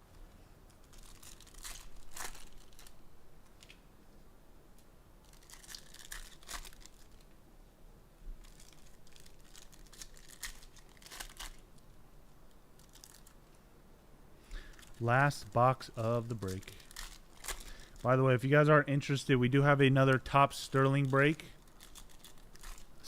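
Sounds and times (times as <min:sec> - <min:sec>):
packaging crinkling and tearing: 0:00.7 - 0:03.0, 0:05.2 - 0:07.3, 0:08.4 - 0:11.8, 0:12.8 - 0:13.4, 0:14.6 - 0:18.2, 0:19.6 - 0:23.0.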